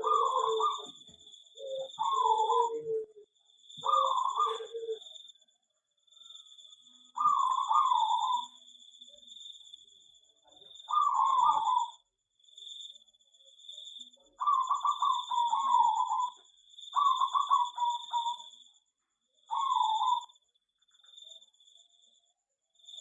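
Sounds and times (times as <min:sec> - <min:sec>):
doves cooing: 0:00.0 - 0:05.3, 0:07.2 - 0:08.6, 0:10.7 - 0:12.0, 0:14.4 - 0:18.5, 0:19.5 - 0:20.4.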